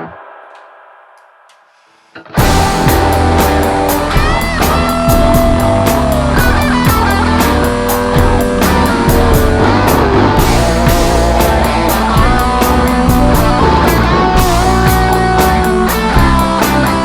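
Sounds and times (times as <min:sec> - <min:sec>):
drums: 0:00.0 - 0:17.0
electric guitar: 0:02.2 - 0:17.0
bass guitar: 0:02.3 - 0:17.0.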